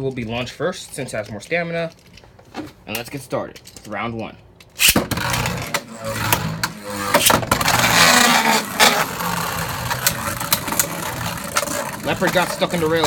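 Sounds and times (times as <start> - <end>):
sharp clicks of hits: 4.6 - 5.2
spinning tops whirring and clashing: 4.8 - 13.0
grinding rasp: 5.2 - 13.0.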